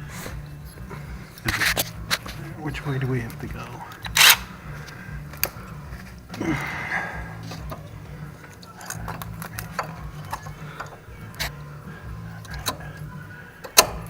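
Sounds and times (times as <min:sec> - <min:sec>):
low hum: 0:00.0 - 0:14.0
scraping rustle: 0:00.2 - 0:06.4
metallic clicks of brake pads: 0:00.3 - 0:06.6, 0:07.4 - 0:14.0.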